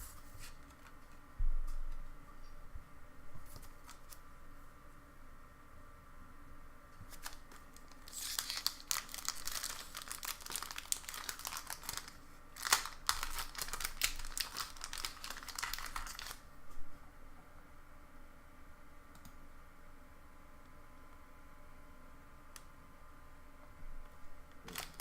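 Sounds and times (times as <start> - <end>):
foil wrapper crinkling and tearing: 7.1 - 16.4, 24.6 - 25.0.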